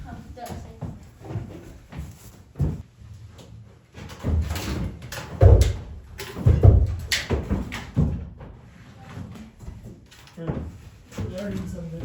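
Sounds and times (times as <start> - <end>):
heavy thumps and knocks: 5.2 - 8.6.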